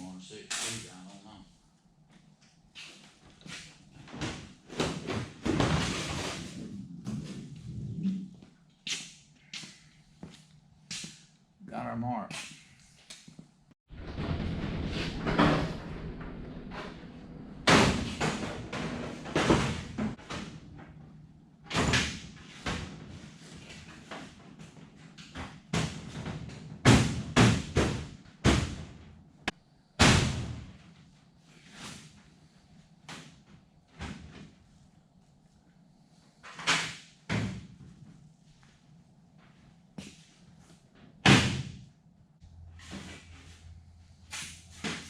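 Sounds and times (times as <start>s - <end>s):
sheet metal rattling and scraping: 14.0s - 20.3s.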